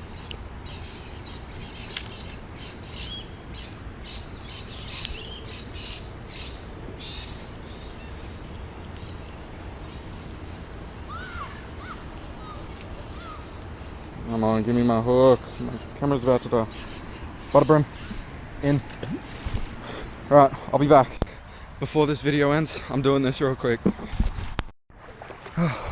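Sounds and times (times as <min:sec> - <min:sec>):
low steady rumble: 0:00.0 - 0:23.4
whistled bird notes: 0:00.2 - 0:18.4
birds chirping and squawking: 0:00.2 - 0:23.0.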